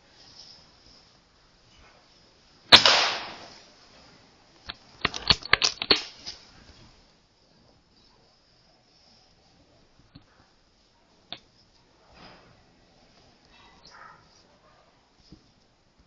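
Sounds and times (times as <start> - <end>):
air rifle shot crack: 2.7 - 3.6
sharp clicks and knocks: 4.6 - 6.4.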